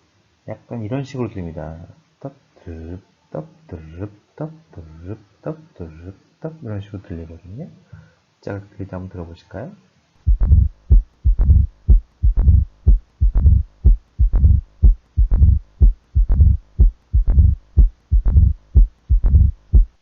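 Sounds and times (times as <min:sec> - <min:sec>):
heartbeat through stethoscope: 0:10.3 - 0:20.0
low heart murmur rumble: 0:10.3 - 0:20.0.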